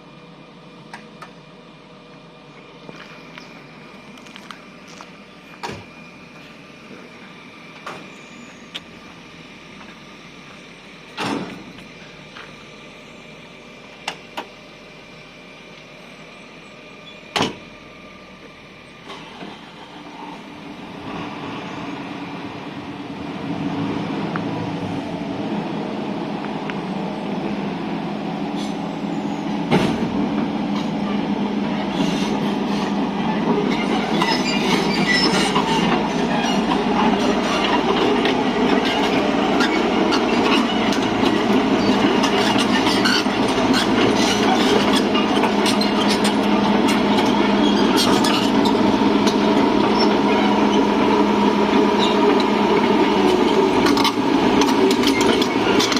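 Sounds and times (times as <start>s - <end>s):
excavator diesel engine: 0.0s - 55.9s.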